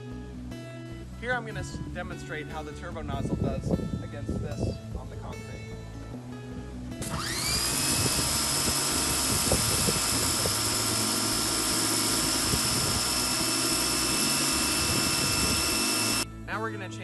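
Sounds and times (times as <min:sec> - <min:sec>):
pressure washer motor whine: 0:07.0 - 0:16.2.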